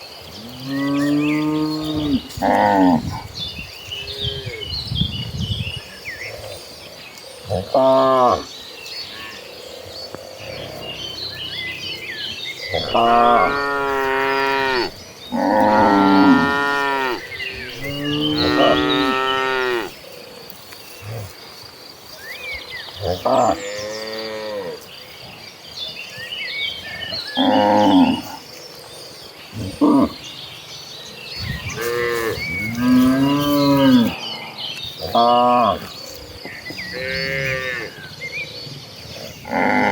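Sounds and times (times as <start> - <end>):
cattle mooing: 12.7 - 19.9.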